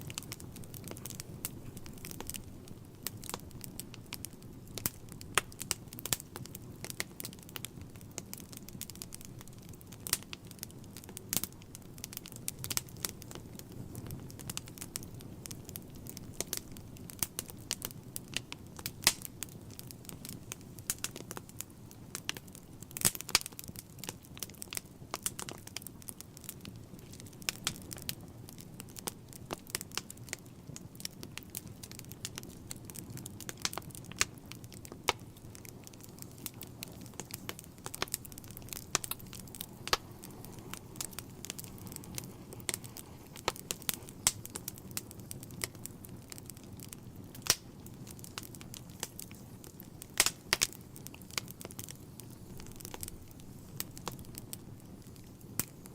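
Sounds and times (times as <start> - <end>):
fire crackling and popping: 0.0 - 55.9
rush of flames: 31.0 - 55.9.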